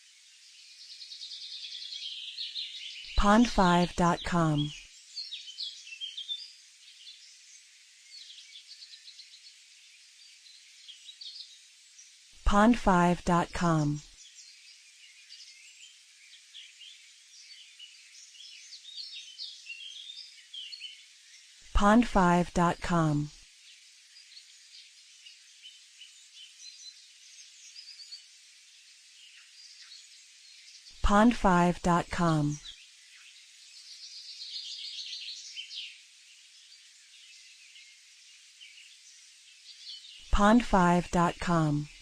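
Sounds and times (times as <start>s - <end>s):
outdoor ambience hiss: 0.0s - 42.0s
birds singing and chirping: 0.5s - 9.5s, 10.3s - 42.0s
birds trilling and chirping: 23.6s - 42.0s.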